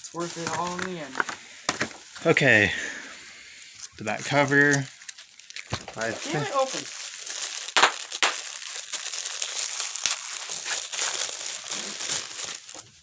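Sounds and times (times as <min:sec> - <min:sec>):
plastic packaging crinkling: 0:00.0 - 0:13.0
sharp plastic snaps: 0:07.8 - 0:08.4.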